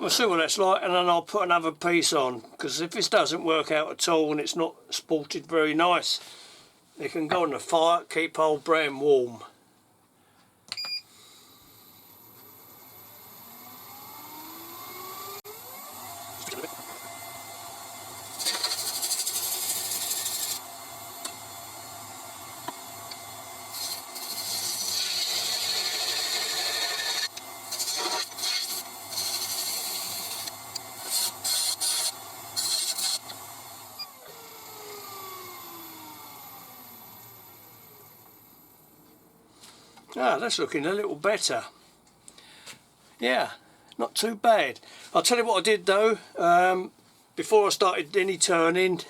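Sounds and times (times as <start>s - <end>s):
lathe motor whine: 11.7s - 38.9s
chisel scraping spinning wood: 18.2s - 20.6s, 22.7s - 33.3s.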